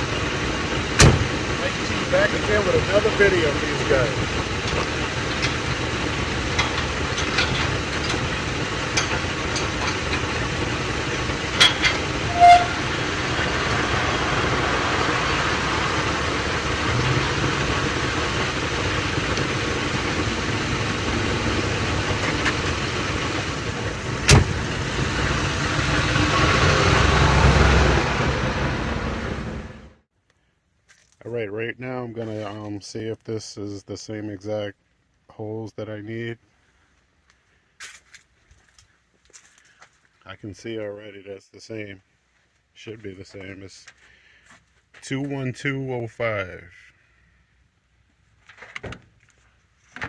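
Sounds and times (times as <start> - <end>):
vehicle rumble: 0.0 - 30.0.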